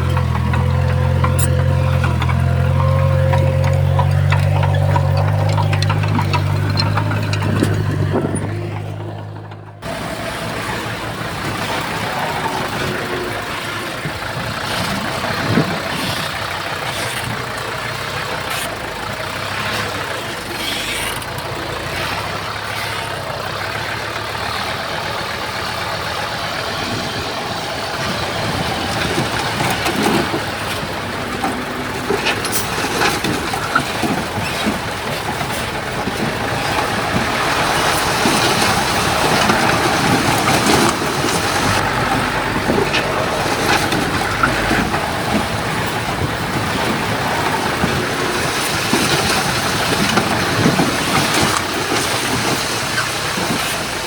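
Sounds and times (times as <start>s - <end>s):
metal clanks and knocks: 0.0s - 18.8s
bulldozer diesel engine running: 0.0s - 54.0s.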